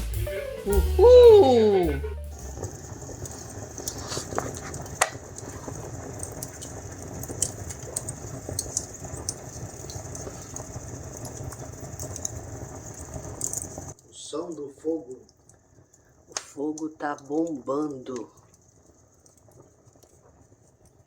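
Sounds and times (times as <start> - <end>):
fire crackling and popping: 2.0 - 21.0
fire roaring: 2.3 - 21.0.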